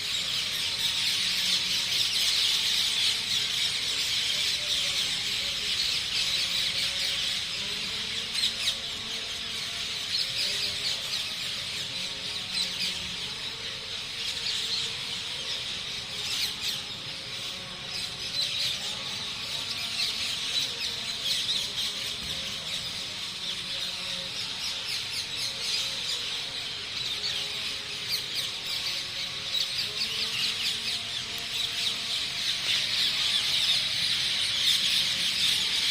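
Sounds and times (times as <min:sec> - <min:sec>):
many small birds chirping: 0:00.0 - 0:35.9.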